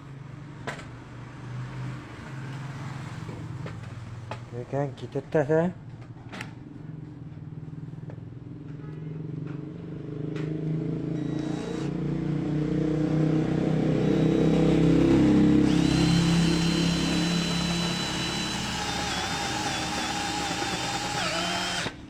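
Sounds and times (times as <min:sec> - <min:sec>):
cordless drill motor hum: 0:11.2 - 0:12.0, 0:14.0 - 0:22.0
high drill whine: 0:11.2 - 0:12.0, 0:13.9 - 0:22.0.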